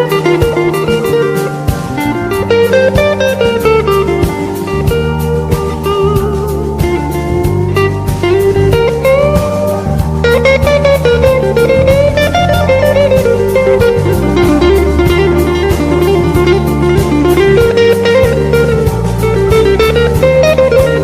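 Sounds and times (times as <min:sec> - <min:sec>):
bass: 0:00.0 - 0:21.0
electric guitar melody: 0:00.0 - 0:21.0
steady drum beat: 0:00.0 - 0:21.0.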